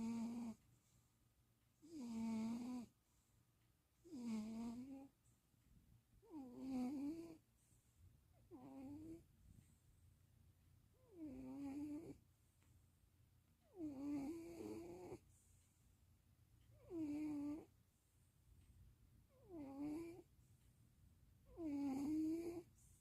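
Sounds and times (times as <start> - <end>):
cat snoring: 0.0 - 0.6, 1.8 - 2.9, 4.0 - 5.1, 6.2 - 7.4, 8.5 - 9.2, 11.0 - 12.2, 13.6 - 15.2, 16.8 - 17.7, 19.3 - 20.3, 21.5 - 22.7.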